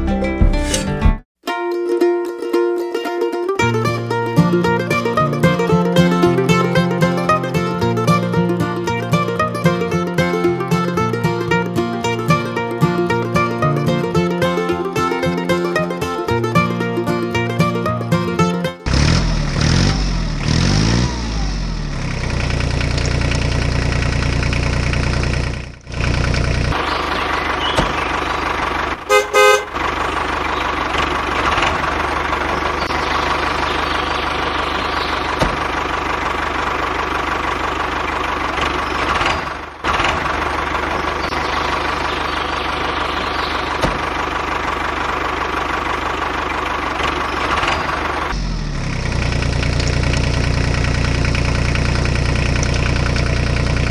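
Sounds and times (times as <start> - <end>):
short horn toots: 29.1 - 29.8.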